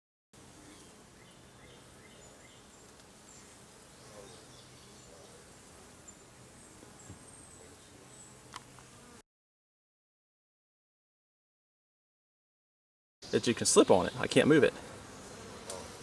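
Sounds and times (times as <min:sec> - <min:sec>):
small birds chirping: 0:00.6 - 0:08.5, 0:13.2 - 0:16.0.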